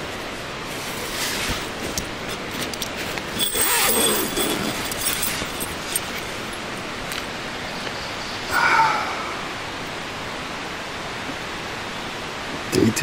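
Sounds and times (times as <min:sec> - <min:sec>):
rustling handling noise: 0:00.0 - 0:07.3.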